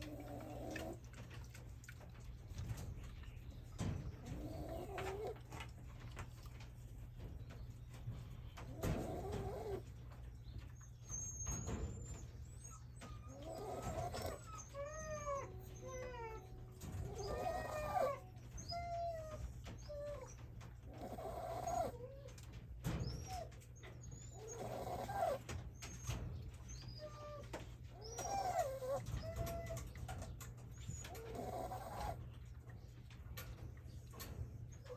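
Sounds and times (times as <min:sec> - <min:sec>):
dog snoring: 0:00.0 - 0:01.0, 0:04.3 - 0:05.4, 0:08.7 - 0:09.8, 0:13.4 - 0:14.4, 0:20.9 - 0:22.0, 0:24.3 - 0:25.4, 0:31.1 - 0:32.2.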